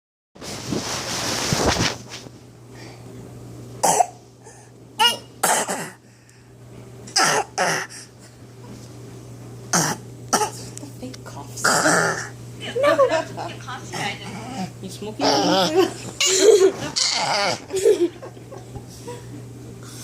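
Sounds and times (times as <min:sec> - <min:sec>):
rustling: 0:00.4 - 0:02.3
person coughing: 0:03.8 - 0:04.2, 0:05.0 - 0:06.0, 0:07.2 - 0:07.9, 0:09.7 - 0:10.7, 0:15.2 - 0:18.1.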